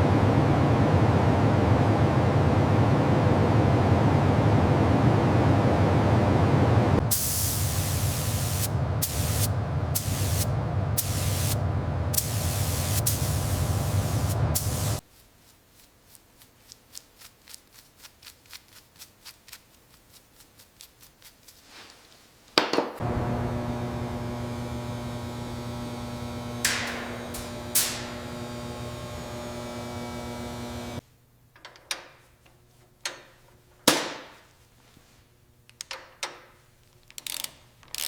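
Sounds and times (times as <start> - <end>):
steady low drone: 0.0 - 15.0, 23.0 - 31.0
steady electrical hum: 6.7 - 15.0, 23.0 - 31.6
compressed air spray hissing: 7.0 - 15.0, 24.2 - 31.0.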